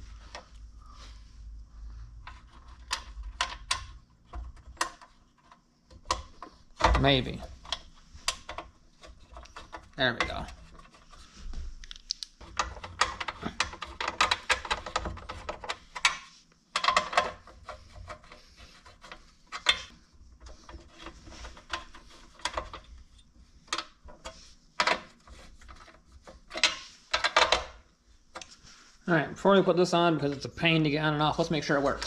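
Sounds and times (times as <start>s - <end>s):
metal parts clicking and scraping: 23.7s - 27.7s.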